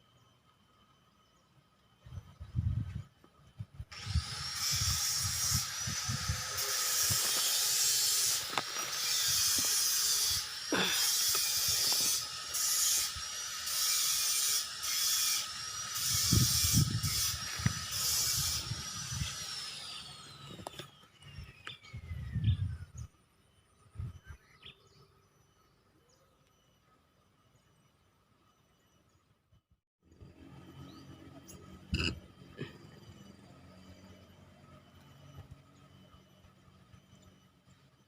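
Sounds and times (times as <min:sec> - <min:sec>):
cicada buzzing: 0:03.9 - 0:21.4.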